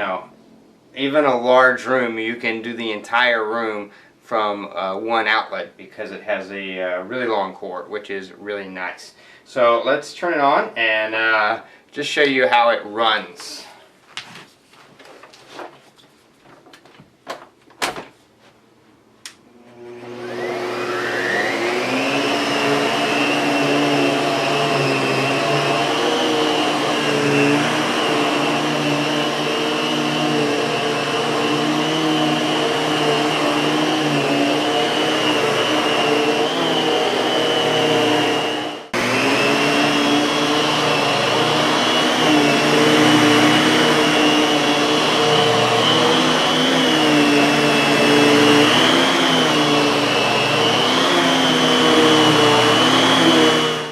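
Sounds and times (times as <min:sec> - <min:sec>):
vacuum cleaner motor running: 0:19.5 - 0:53.9.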